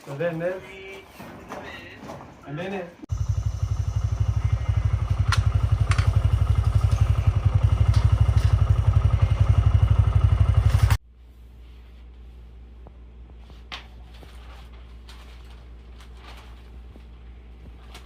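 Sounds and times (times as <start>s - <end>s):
machine throbbing: 3.1s - 10.9s.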